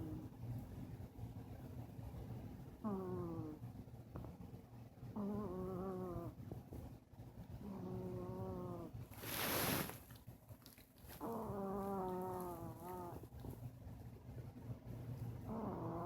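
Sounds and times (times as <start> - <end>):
dog snoring: 0.0 - 0.3, 2.8 - 3.6, 5.1 - 6.4, 7.6 - 9.9, 11.1 - 13.3, 15.4 - 16.0.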